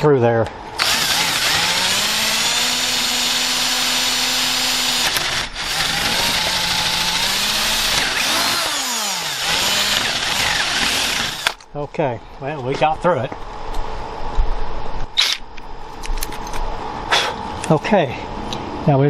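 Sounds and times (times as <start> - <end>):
electric drill boring into wood: 0.8 - 11.6.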